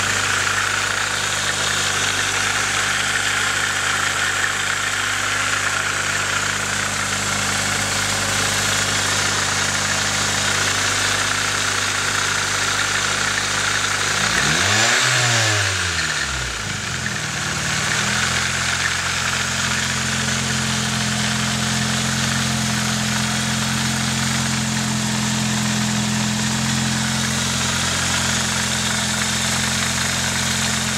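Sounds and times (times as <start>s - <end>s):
car engine idling and revving: 0.0s - 30.9s.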